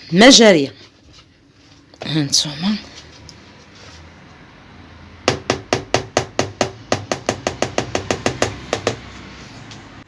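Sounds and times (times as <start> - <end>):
rapid sharp knocks: 5.3 - 9.1.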